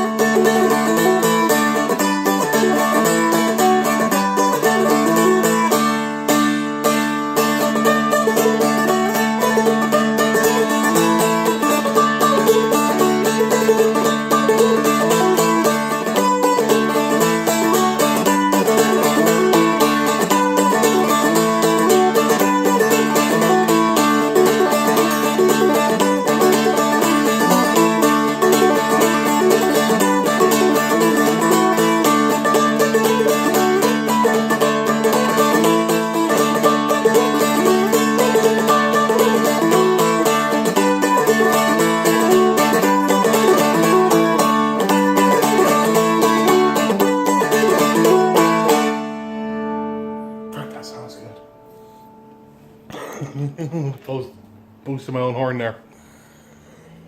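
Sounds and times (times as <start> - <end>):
flatpicked dulcimer jig: 0.0 - 52.1
droning string: 0.0 - 52.8.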